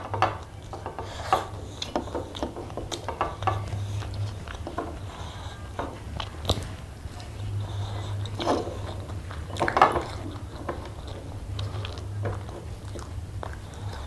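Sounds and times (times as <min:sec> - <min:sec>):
chewing and biting food: 0:00.0 - 0:14.0
steady low hum: 0:00.0 - 0:14.0.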